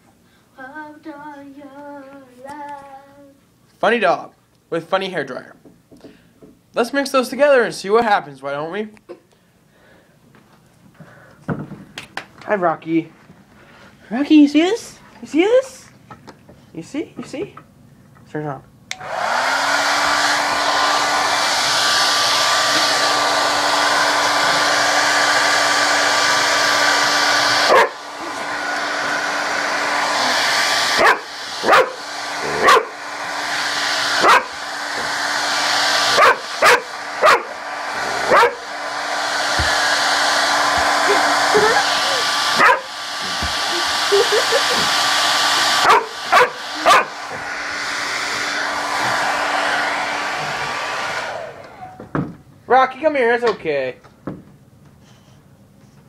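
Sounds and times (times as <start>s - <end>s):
hair dryer running: 18.9s - 52.4s
dog barking: 27.7s - 28.0s, 31.0s - 33.0s, 34.2s - 34.6s, 36.2s - 37.6s, 38.3s - 38.6s, 42.6s - 42.9s, 45.8s - 47.2s.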